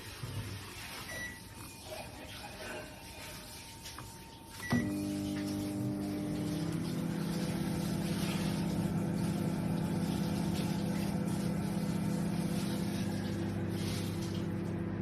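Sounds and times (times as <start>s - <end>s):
microwave oven humming: 3.8s - 15.0s.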